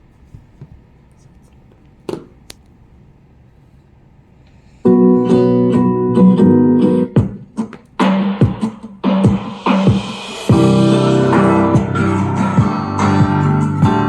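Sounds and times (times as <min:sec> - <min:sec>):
guitar music: 0:04.9 - 0:14.0
drum hits: 0:07.1 - 0:14.0.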